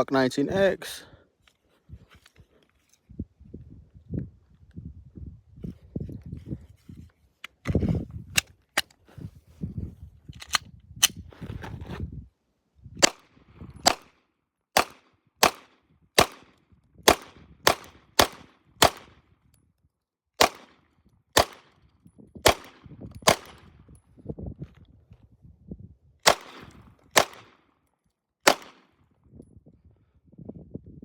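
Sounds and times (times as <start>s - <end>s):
pistol shots: 13.8s - 14.1s, 14.8s - 16.5s, 17.1s - 19.1s, 20.4s - 20.7s, 21.4s - 21.7s, 22.4s - 23.6s, 26.2s - 27.6s, 28.4s - 28.8s.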